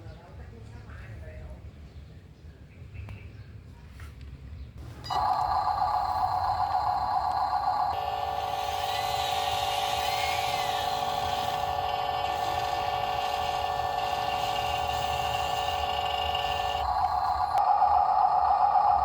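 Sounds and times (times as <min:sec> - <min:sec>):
motor drone with whine: 0:04.8 - 0:19.0.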